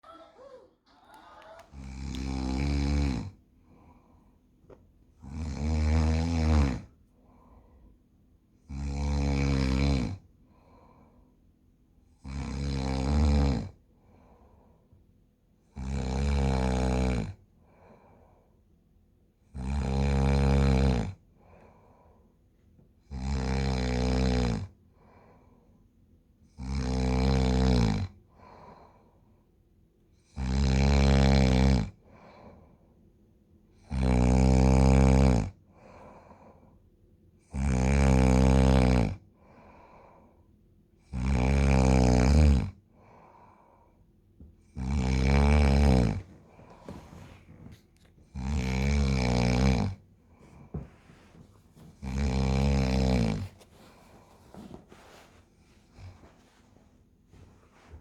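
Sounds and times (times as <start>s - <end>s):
person snoring: 1.7s - 3.4s, 5.2s - 6.9s, 8.7s - 10.2s, 12.2s - 13.8s, 15.8s - 17.4s, 19.6s - 21.2s, 23.1s - 24.7s, 26.6s - 28.1s, 30.3s - 32.0s, 33.9s - 35.6s, 37.5s - 39.2s, 41.1s - 42.8s, 44.7s - 47.0s, 48.3s - 50.0s, 52.0s - 54.6s
faint breath sound: 7.2s - 8.1s, 10.4s - 11.4s, 17.6s - 18.6s, 21.4s - 22.4s, 28.3s - 29.4s, 35.7s - 36.9s, 39.3s - 40.6s, 42.9s - 44.2s, 52.6s - 58.0s.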